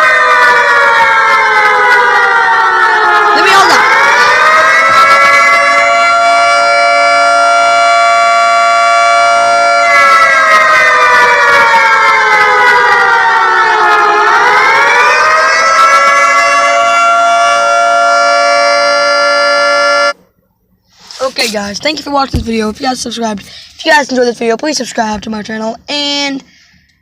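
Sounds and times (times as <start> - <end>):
warning siren wailing: 0.0 - 20.2.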